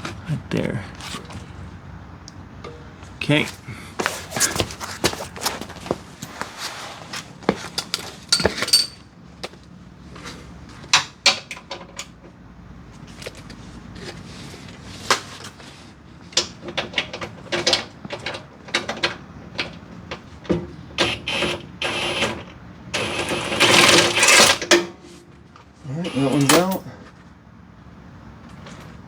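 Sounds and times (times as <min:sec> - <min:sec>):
ringing metal clank: 0:02.6 - 0:03.1.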